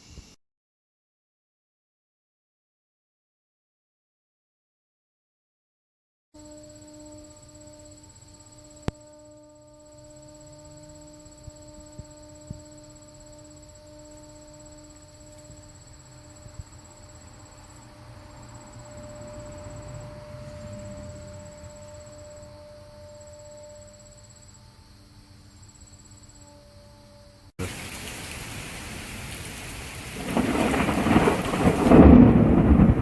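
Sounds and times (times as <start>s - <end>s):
steady hum with overtones: 6.4s - 27.5s
high insect-like trill: 6.4s - 28.3s.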